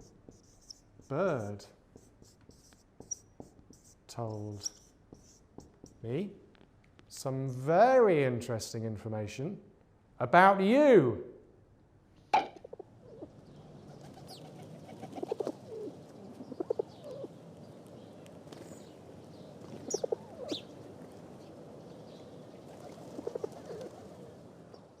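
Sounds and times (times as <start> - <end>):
steady background hiss: 0.0 - 25.0
birds calling: 12.4 - 25.0.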